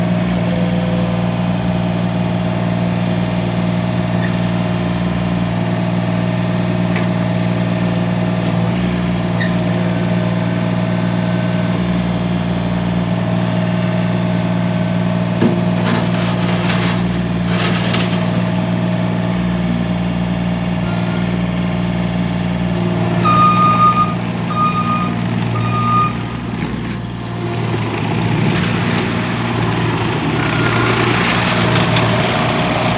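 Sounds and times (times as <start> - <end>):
diesel engine running: 0.0 - 32.9
backup alarm beeping: 23.0 - 26.2.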